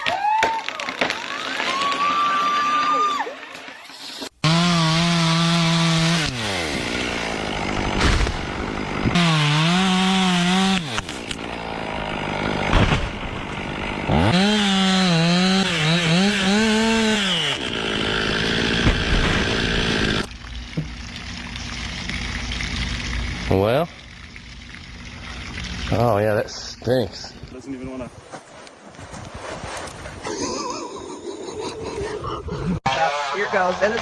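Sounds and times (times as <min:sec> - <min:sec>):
chainsaw cutting into tree trunk: 0:04.2 - 0:20.4.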